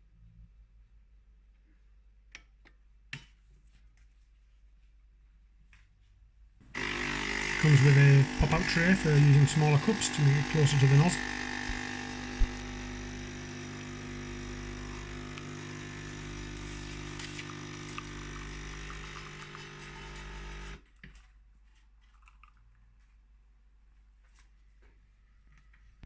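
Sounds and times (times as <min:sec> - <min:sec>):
coffee machine pump humming: 0:06.7 - 0:20.8.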